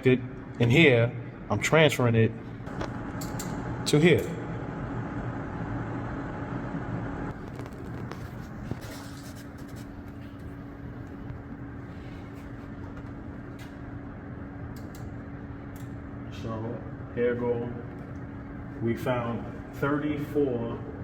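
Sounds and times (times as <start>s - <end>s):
steady background hum: 0.0s - 21.0s.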